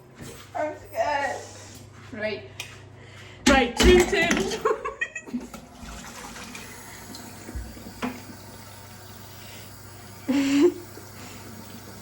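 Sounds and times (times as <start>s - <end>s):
kitchen tap running: 3.8s - 12.0s.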